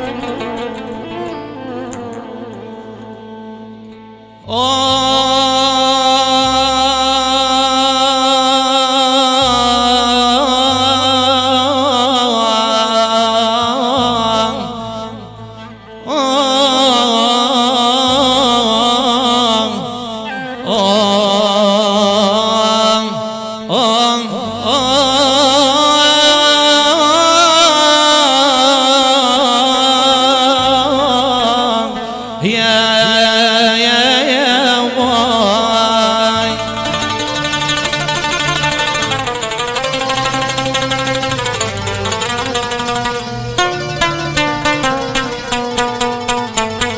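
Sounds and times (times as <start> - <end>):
ornamented melody over low accompaniment: 36.4 - 46.9.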